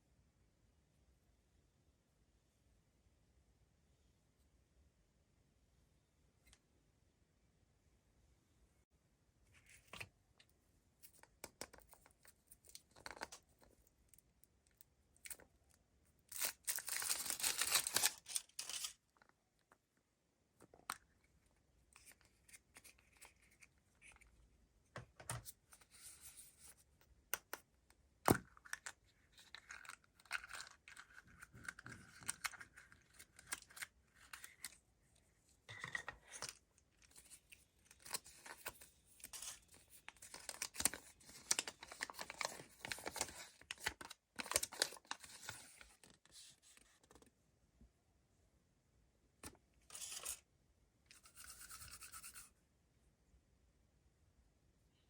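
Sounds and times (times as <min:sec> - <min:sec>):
foil crinkling: 0:16.3 - 0:19.0
foil wrapper tearing: 0:16.3 - 0:19.0.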